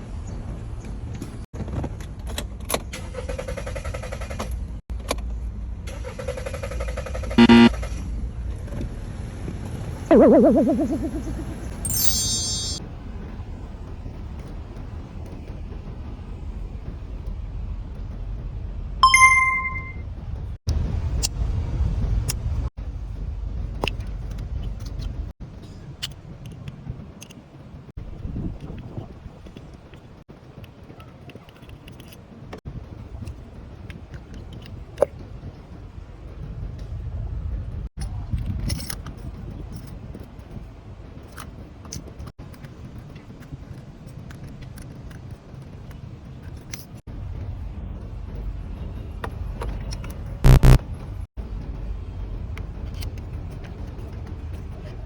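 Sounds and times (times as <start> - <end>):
car horn honk: 7.4 - 7.7
sharp clicks: 50.5 - 50.8.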